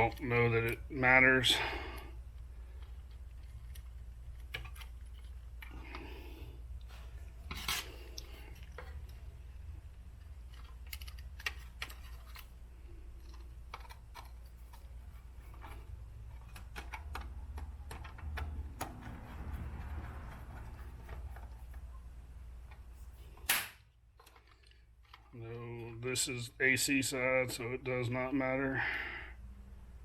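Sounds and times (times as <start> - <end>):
clicks and taps of wire leads: 15.5 - 21.9.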